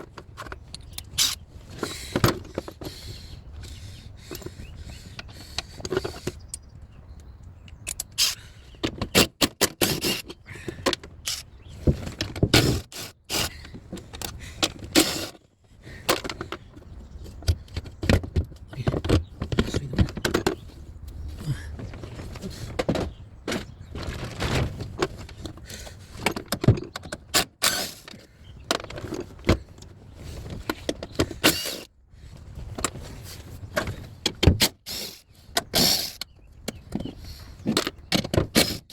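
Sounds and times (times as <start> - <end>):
hand tools clanking on metal: 25.3 - 29.5, 30.6 - 31.9.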